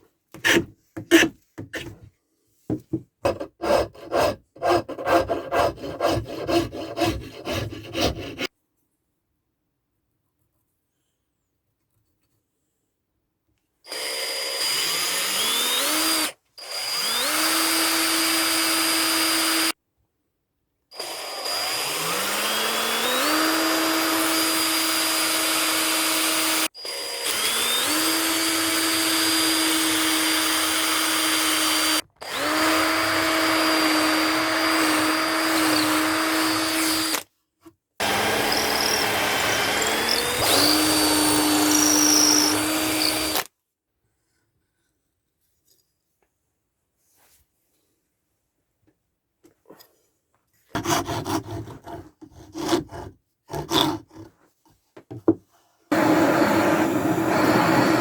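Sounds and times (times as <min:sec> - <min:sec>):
power tool motor whining: 0:13.9 - 0:19.7, 0:21.0 - 0:37.2, 0:38.0 - 0:43.5, 0:55.9 - 0:58.0.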